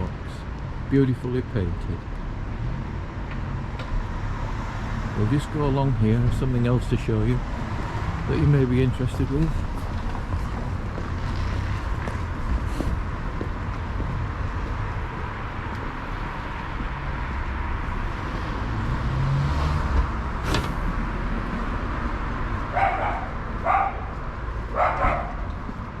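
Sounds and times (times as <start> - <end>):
dog barking: 22.7 - 25.5.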